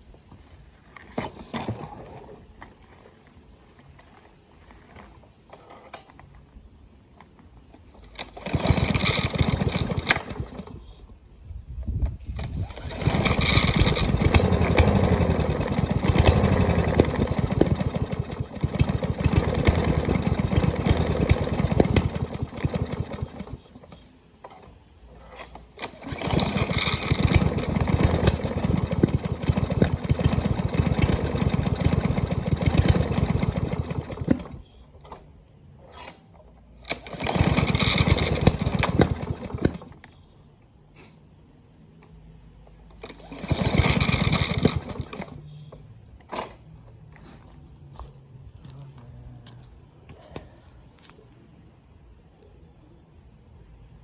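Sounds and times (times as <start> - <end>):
small lawn mower engine running roughly: 8.1 - 11.1, 12.3 - 24.6, 25.2 - 34.7, 36.8 - 40.1, 43.0 - 45.4.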